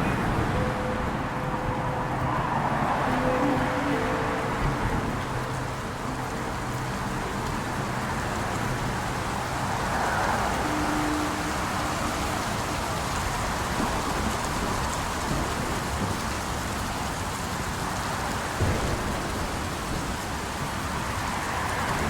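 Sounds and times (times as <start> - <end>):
road traffic: 0.0 - 22.0
steady rain: 0.0 - 22.0.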